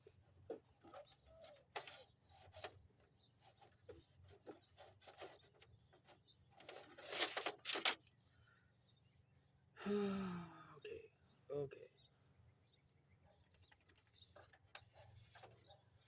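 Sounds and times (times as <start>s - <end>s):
small clicks: 13.4s - 14.9s.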